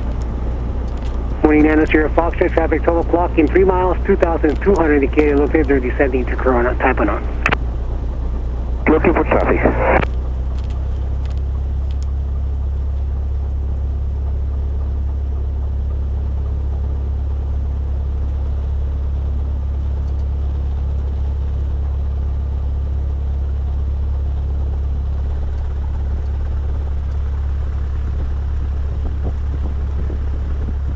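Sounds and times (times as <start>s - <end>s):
airplane engine droning: 0.0s - 30.9s.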